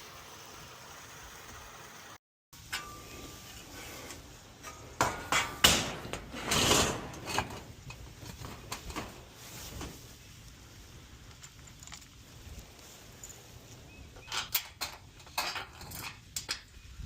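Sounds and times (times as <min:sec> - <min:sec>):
rough scraping noise: 0:02.7 - 0:05.0, 0:05.8 - 0:10.2
light clicks and clatter: 0:11.2 - 0:13.4.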